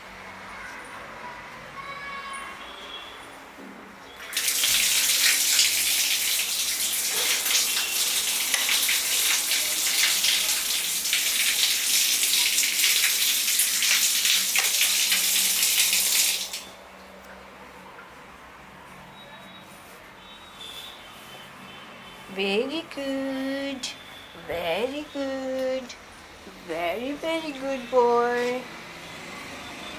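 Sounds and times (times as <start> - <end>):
running water hissing: 4.3 - 16.8.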